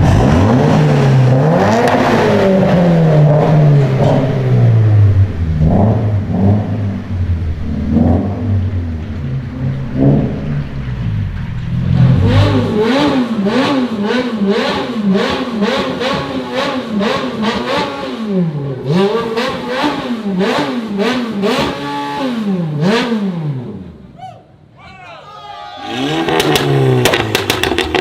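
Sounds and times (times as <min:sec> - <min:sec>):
car engine revving with crackle: 0:00.0 - 0:24.0, 0:25.9 - 0:28.0.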